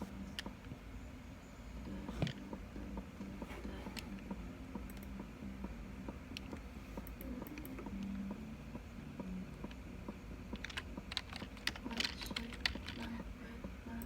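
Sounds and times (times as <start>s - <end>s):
faint low steady notes: 0.0s - 10.6s
rapid clicking keys: 9.6s - 13.3s.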